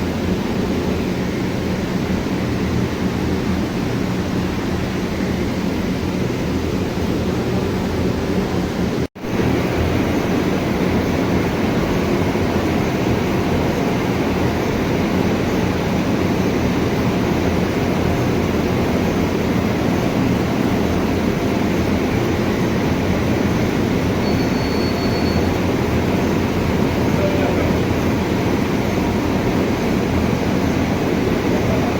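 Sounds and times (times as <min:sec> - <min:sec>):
large machine running: 0:00.0 - 0:31.9
faint high whine: 0:22.8 - 0:31.9.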